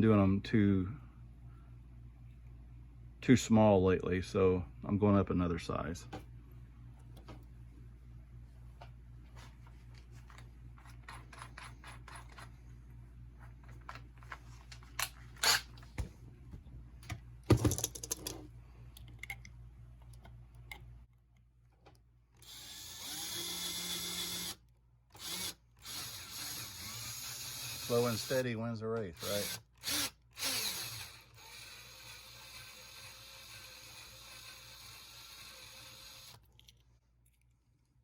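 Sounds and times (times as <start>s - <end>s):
low steady hum: 0.0s - 38.0s
tools clicking and knocking: 10.3s - 12.5s, 17.5s - 19.5s
power drill drilling: 22.4s - 24.6s, 25.2s - 28.4s, 29.2s - 36.4s.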